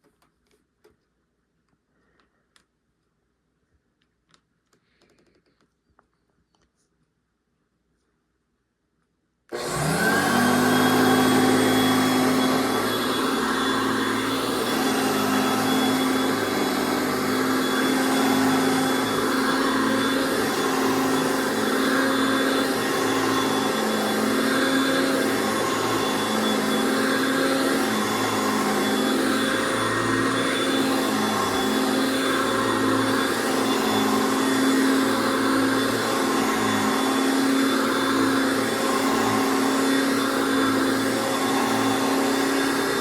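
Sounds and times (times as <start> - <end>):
vacuum cleaner motor running: 9.5 - 43.0.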